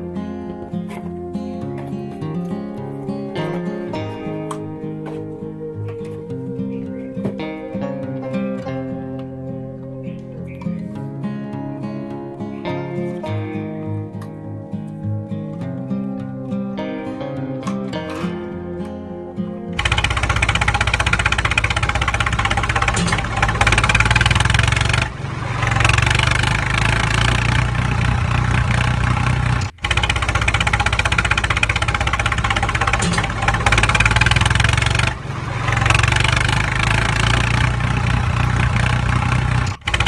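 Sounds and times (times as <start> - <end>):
tractor engine running: 19.7 - 40.0.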